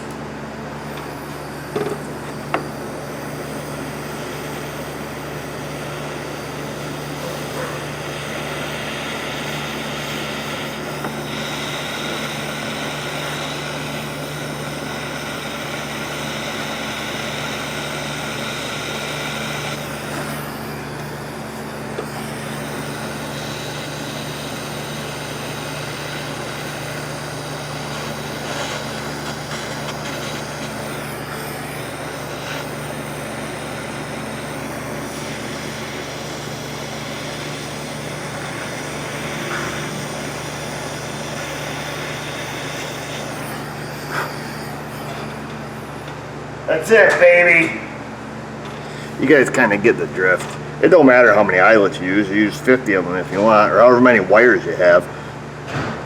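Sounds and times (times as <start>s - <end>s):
heat gun blowing: 0.0s - 52.4s.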